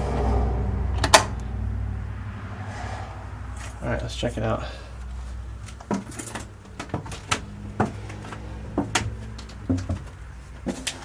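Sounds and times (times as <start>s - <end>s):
footsteps on stairs: 5.4s - 11.0s.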